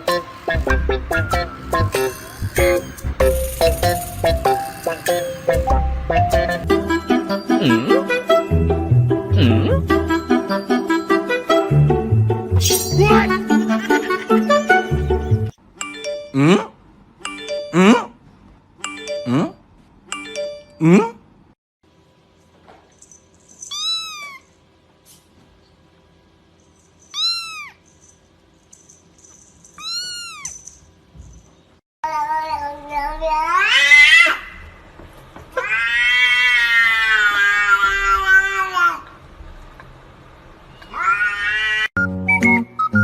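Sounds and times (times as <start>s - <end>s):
kitten mewing: 27.2s - 27.8s, 29.8s - 30.5s
cat meowing long calls: 40.9s - 41.9s.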